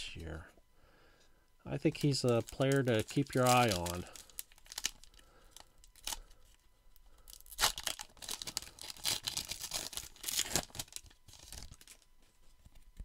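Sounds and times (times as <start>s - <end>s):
cards and wrapper rustling: 1.7s - 6.6s, 7.2s - 13.0s.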